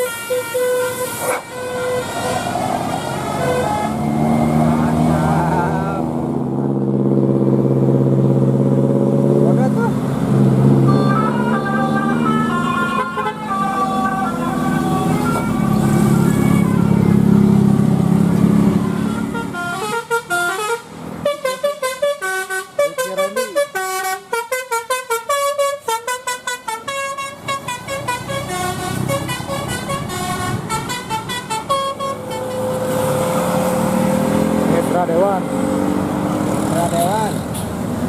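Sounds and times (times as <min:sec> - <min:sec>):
musical air horn melody: 0:00.0 - 0:04.2, 0:10.8 - 0:17.1, 0:18.8 - 0:33.4
bus engine rumble: 0:00.0 - 0:38.0.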